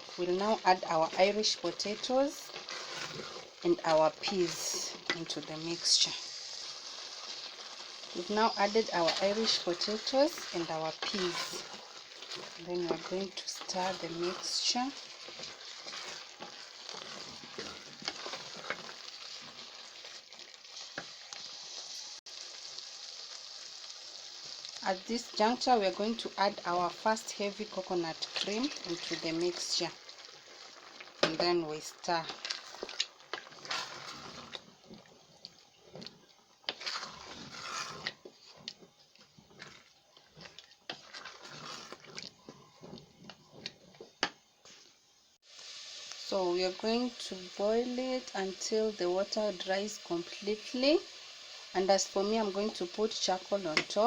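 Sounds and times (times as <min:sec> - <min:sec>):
food sizzling in a pot: 0:00.0 - 0:54.0
spoon scraping a pot: 0:00.1 - 0:22.0, 0:31.2 - 0:44.3.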